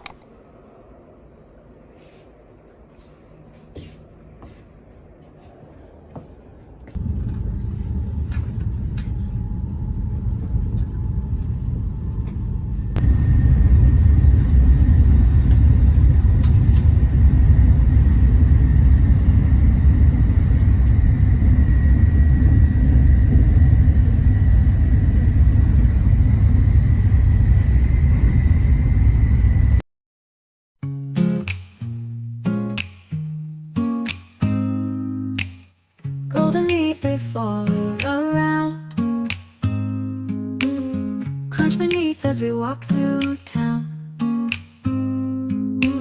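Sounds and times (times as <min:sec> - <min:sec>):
low rumble: 0:05.8 - 0:29.8.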